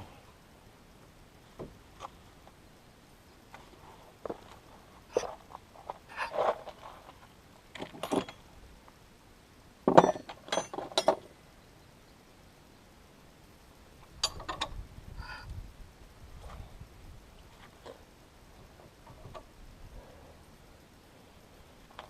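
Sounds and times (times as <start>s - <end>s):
metal tools clinking: 8.0s - 8.4s, 10.0s - 11.2s.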